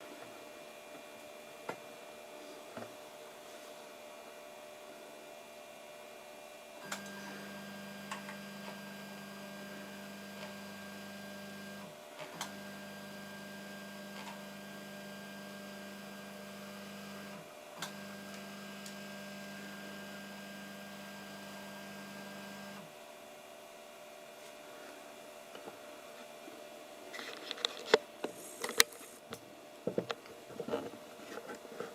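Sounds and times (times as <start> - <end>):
stepper motor hum and whine: 6.8 - 22.9.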